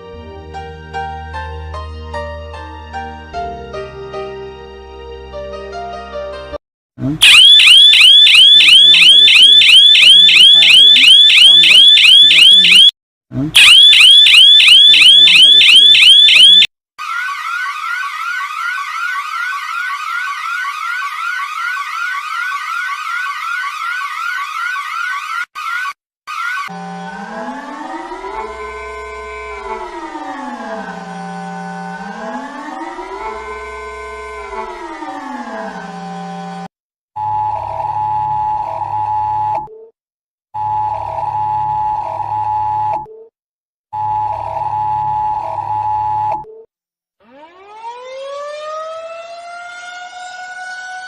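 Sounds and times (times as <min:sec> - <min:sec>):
electronic warning tone: 0:07.2 - 0:12.9, 0:13.6 - 0:16.7
electronic siren yelping: 0:07.2 - 0:13.0, 0:13.6 - 0:36.6, 0:37.2 - 0:39.9, 0:40.6 - 0:43.3, 0:44.0 - 0:46.6, 0:47.2 - 0:51.0.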